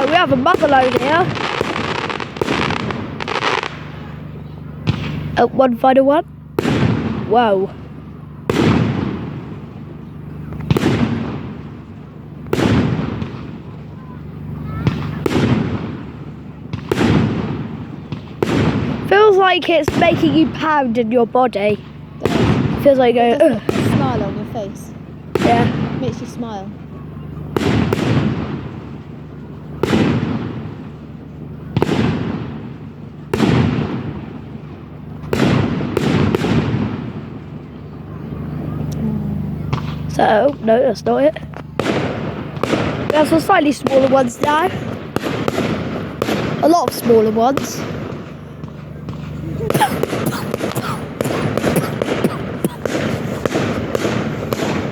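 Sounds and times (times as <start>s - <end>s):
firework shells bursting: 0.0s - 4.1s, 41.5s - 54.9s
fireworks bangs with echo: 0.0s - 38.9s, 39.5s - 54.9s.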